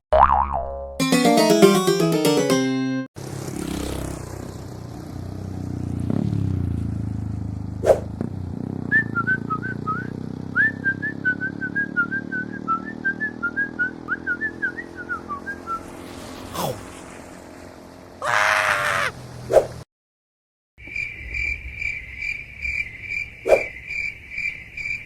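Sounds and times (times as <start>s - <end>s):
quick whoosh: 7.8s - 8.1s, 19.5s - 19.8s, 23.5s - 23.7s
high whistled chirps: 23.4s - 23.8s.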